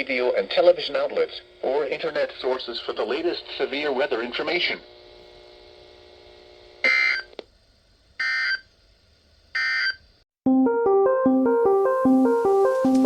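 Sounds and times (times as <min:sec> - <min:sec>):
faint steady hum: 0:00.0 - 0:10.2
keyboard music: 0:10.4 - 0:13.0.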